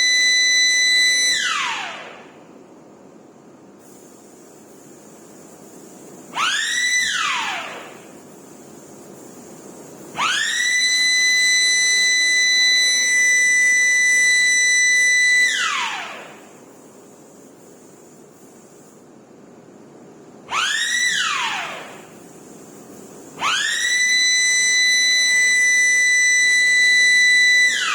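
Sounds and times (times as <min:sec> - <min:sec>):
motor-driven warning siren: 0:00.0 - 0:02.2, 0:06.4 - 0:08.0, 0:10.2 - 0:16.5, 0:20.5 - 0:22.1, 0:23.4 - 0:27.9.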